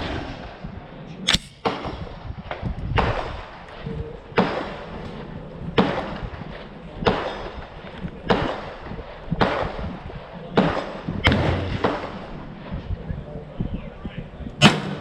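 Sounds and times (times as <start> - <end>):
rifle shots: 1.3 - 2.0.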